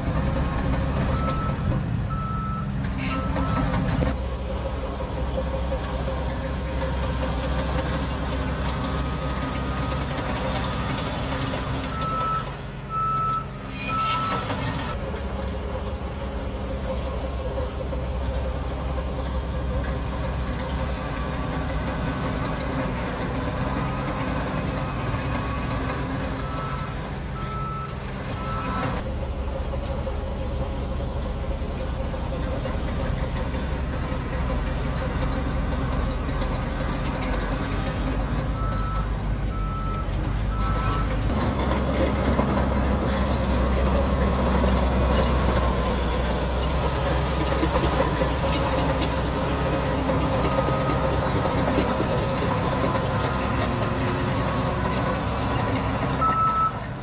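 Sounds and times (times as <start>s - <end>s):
bulldozer diesel engine: 0.0s - 57.0s
reversing alarm beeps: 1.1s - 3.6s, 11.9s - 14.6s, 26.4s - 29.0s, 38.6s - 41.1s, 56.2s - 56.8s.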